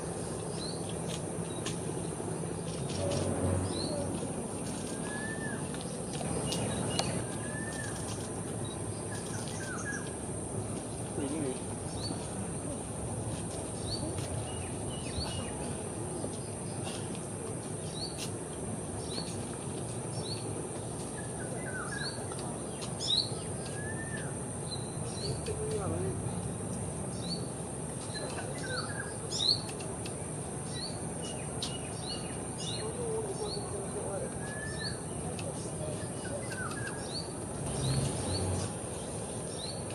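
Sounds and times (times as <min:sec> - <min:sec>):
bird chirping: 0:02.5 - 0:10.2, 0:27.1 - 0:39.9
sunbird whistled calls: 0:04.8 - 0:10.2, 0:21.2 - 0:25.4, 0:34.3 - 0:35.2.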